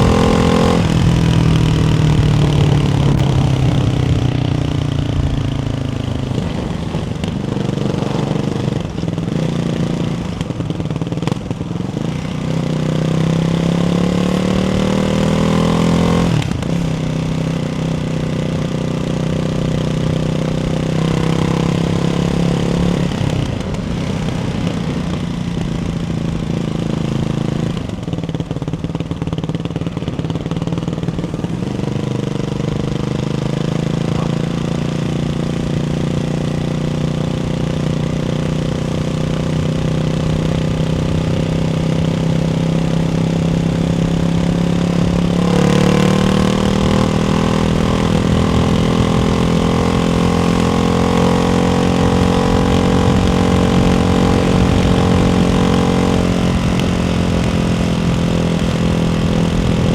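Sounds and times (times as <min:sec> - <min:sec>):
motorcycle engine running: 0:00.0 - 0:59.9.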